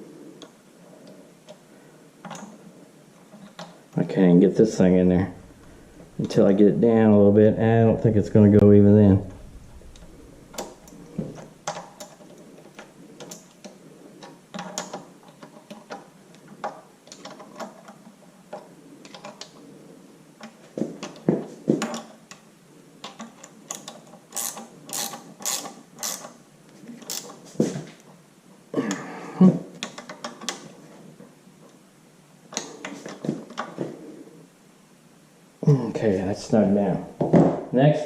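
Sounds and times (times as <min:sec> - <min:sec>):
wrench clicking on bolt: 0:23.7 - 0:26.3.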